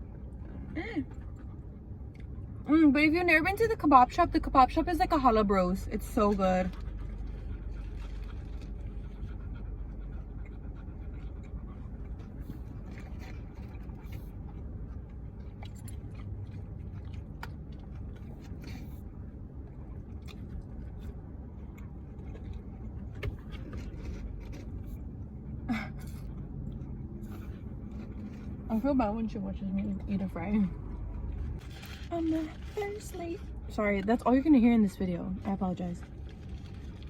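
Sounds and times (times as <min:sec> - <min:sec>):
low rumble: 0:00.0 - 0:37.0
faint chewing: 0:00.3 - 0:02.7, 0:06.1 - 0:37.0
wrapper rustling: 0:31.6 - 0:33.2.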